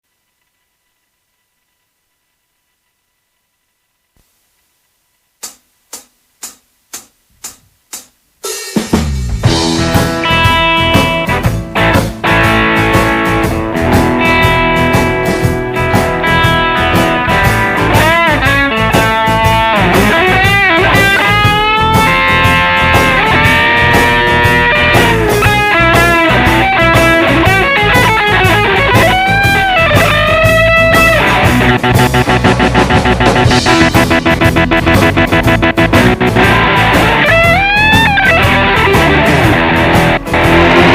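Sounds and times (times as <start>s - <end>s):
electric guitar chopping echoes: 5.4s - 40.9s
guitar notes swooping in pitch: 9.5s - 40.9s.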